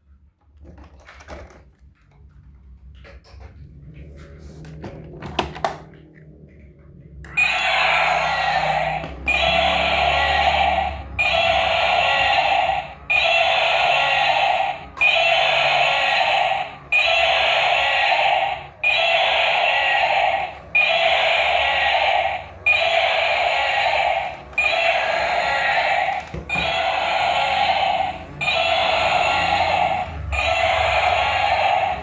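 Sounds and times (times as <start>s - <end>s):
toy electronic sound clip: 7.3s - 32.0s.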